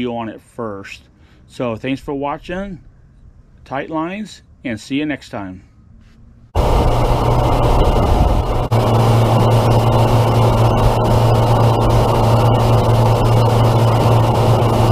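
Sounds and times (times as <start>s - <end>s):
low mechanical hum: 5.8s - 14.9s
loud steady rushing noise: 6.6s - 14.9s.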